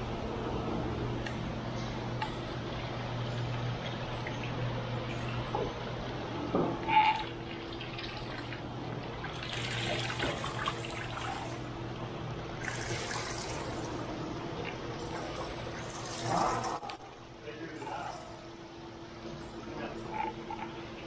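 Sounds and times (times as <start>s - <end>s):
steady low hum: 0.0s - 21.0s
water running and splashing: 7.4s - 16.8s.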